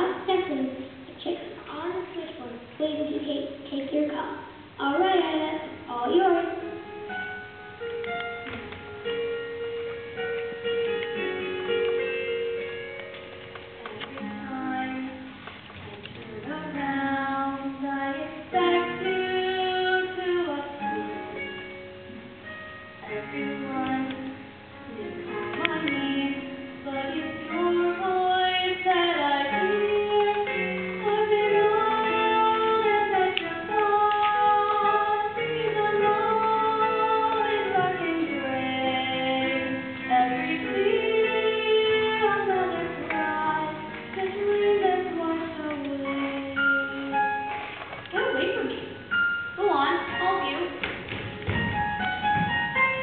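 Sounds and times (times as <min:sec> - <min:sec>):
girl singing: 0:00.0 - 0:06.9, 0:13.7 - 0:21.3, 0:23.0 - 0:47.3
instrumental accompaniment: 0:00.0 - 0:53.0.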